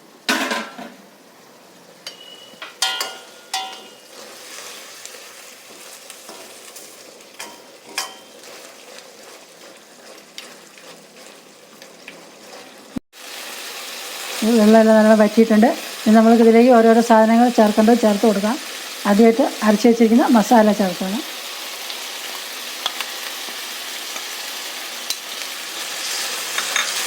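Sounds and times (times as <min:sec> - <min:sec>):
chicken sizzling in a pan: 0:01.6 - 0:27.0
spoon clinking against pan: 0:02.0 - 0:04.1, 0:07.4 - 0:08.4.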